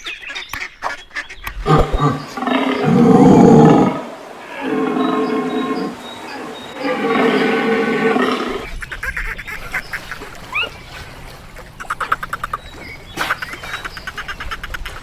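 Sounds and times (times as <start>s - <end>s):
long pitched animal call: 1.7s - 8.7s
rapid short clipped animal calls: 1.7s - 8.7s.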